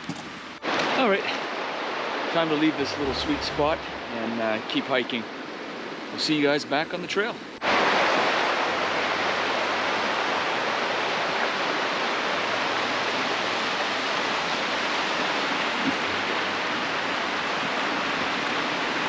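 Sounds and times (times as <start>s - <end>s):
fast-flowing river rushing: 0.6s - 19.0s.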